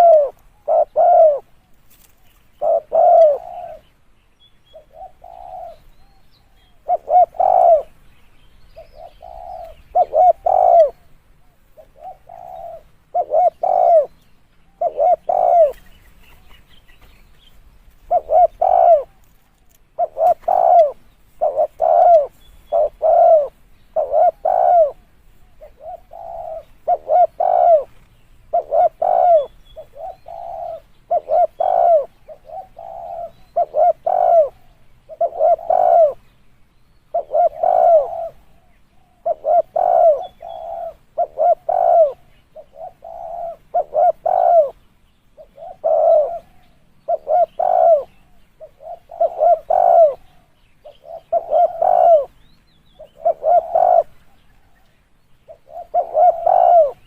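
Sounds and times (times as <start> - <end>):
dove cooing: 0.0 - 3.9, 4.7 - 8.0, 8.8 - 16.6, 18.0 - 36.2, 37.1 - 44.8, 45.4 - 52.4, 53.0 - 54.9, 55.5 - 57.0.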